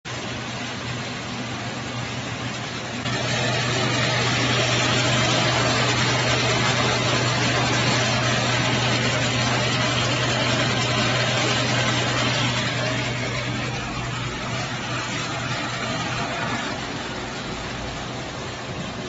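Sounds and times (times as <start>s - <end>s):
peanut peeling machine running: 3.0s - 18.2s.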